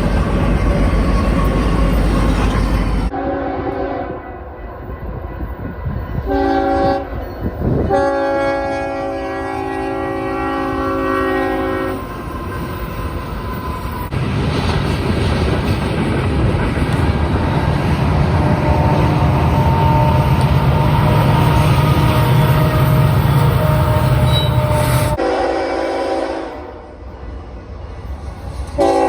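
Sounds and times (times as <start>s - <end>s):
train rumbling on rails: 0.0s - 29.0s
locomotive horn: 1.1s - 4.6s, 5.7s - 12.2s, 18.2s - 27.0s, 28.8s - 29.0s.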